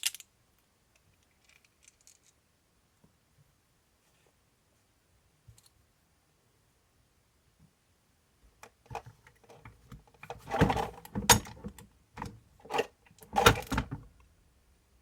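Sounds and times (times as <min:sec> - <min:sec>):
clicks and scrapes of metal parts: 0:08.9 - 0:14.0.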